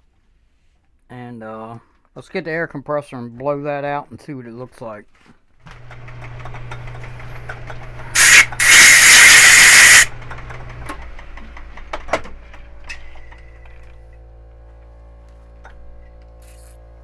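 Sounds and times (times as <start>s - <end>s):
steady machine hum: 6.5s - 11.4s
compressed air blow gun hissing: 8.2s - 10.1s.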